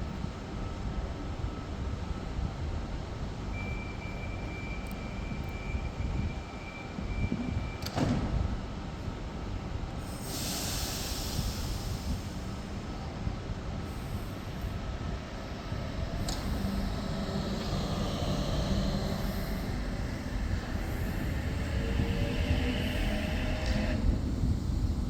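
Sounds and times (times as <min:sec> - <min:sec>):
electric train rumbling: 0:00.0 - 0:25.0
hiss: 0:10.0 - 0:12.8, 0:16.1 - 0:24.2.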